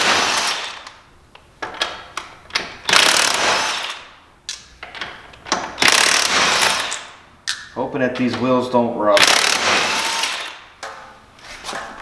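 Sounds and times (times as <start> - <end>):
impact wrench bursts: 0.0 - 0.9, 2.8 - 4.1, 5.6 - 7.1, 9.2 - 10.6
clicks and knocks of nuts and tools: 0.4 - 8.5.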